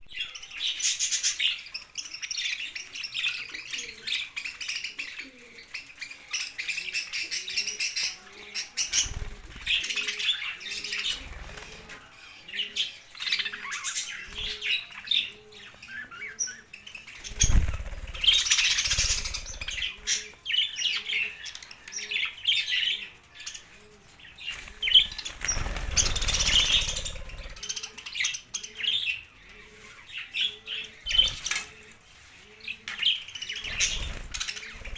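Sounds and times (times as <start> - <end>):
budgerigars chattering and chirping: 12.5 - 23.2, 24.4 - 32.0, 32.8 - 34.9
wing flutter rustling: 24.6 - 27.6.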